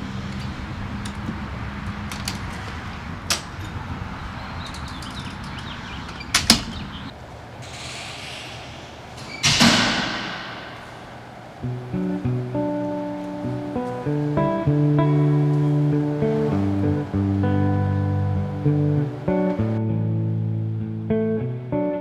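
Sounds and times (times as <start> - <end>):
sharp knocks and clicks: 0.0 - 7.1.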